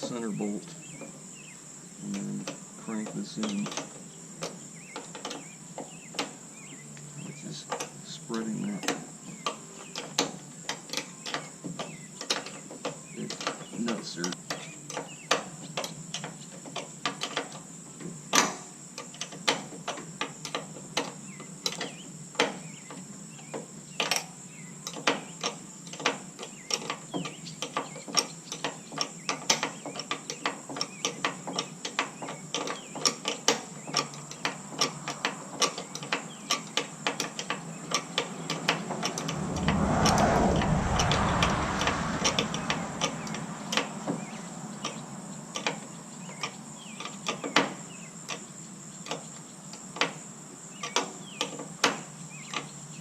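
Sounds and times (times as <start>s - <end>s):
rushing noise: 38.4s - 44.1s.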